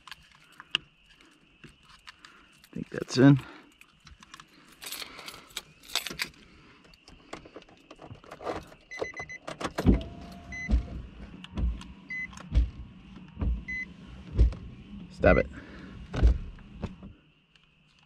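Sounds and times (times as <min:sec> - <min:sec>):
clicks and rattles in car door: 0:07.0 - 0:14.7
dull low thumps: 0:10.0 - 0:17.2.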